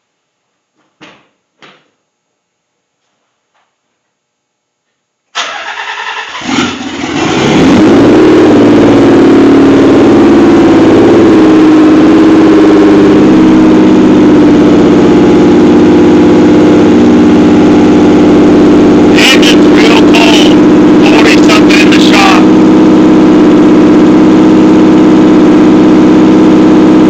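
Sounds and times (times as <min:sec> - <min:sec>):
engine starter cranking: 0:05.4 - 0:06.9
loud rough engine idle: 0:08.6 - 0:27.0.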